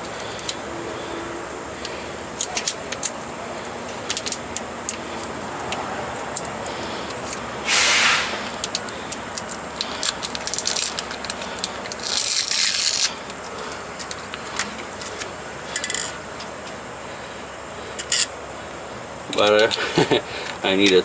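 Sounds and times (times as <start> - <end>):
steady background noise: 0.0 - 21.0
loud air hiss: 7.6 - 8.7
metal tools clicking and rattling: 14.0 - 16.2.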